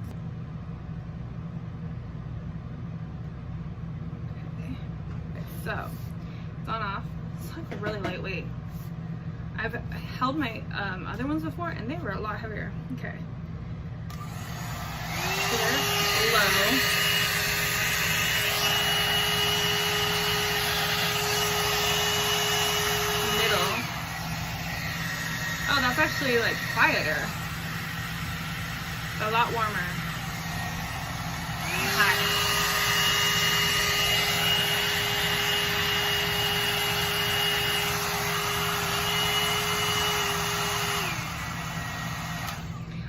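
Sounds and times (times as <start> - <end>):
hot air brush blowing and whining: 14.1 - 42.9.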